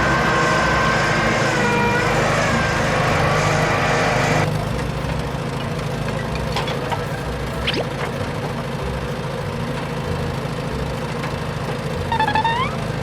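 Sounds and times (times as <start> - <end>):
electric motor whine: 0.0 - 4.5
low mechanical rumble: 0.0 - 13.0.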